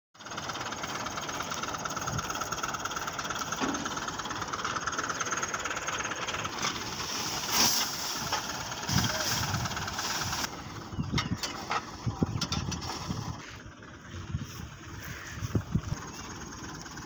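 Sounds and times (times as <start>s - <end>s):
harvester engine throbbing: 0.2s - 17.0s.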